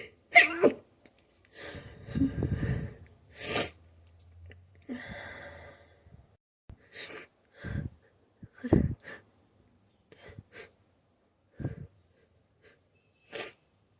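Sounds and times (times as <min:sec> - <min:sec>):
quick breaths: 0:01.4 - 0:03.8, 0:04.9 - 0:09.3.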